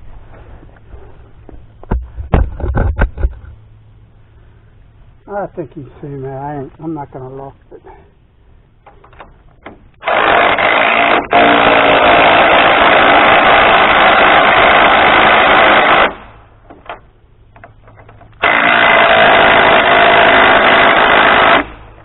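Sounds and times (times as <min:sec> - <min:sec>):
handheld power tool running: 0:10.0 - 0:16.2, 0:18.4 - 0:21.8.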